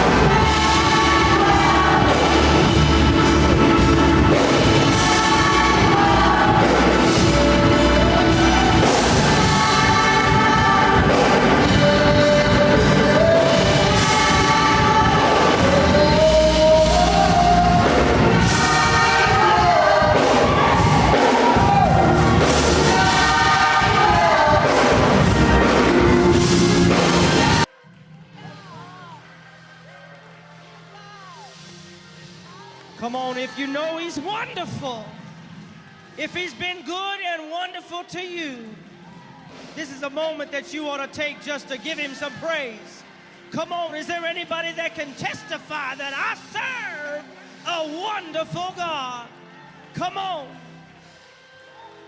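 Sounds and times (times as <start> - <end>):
steady drum beat: 0.0 - 27.7
strong bass: 0.0 - 27.7
gospel singers with band: 0.0 - 30.7.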